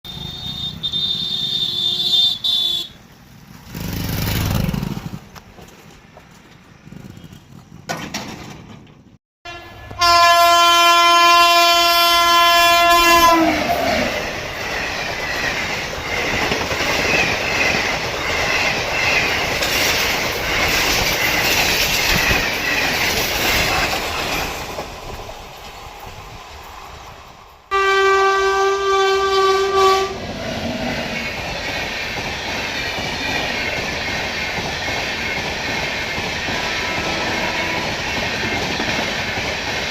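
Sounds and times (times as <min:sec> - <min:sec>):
train horn blast: 0:00.1 - 0:03.0, 0:09.4 - 0:14.3, 0:27.7 - 0:31.0, 0:36.6 - 0:38.0
train rumble and wheel clatter: 0:00.1 - 0:39.9.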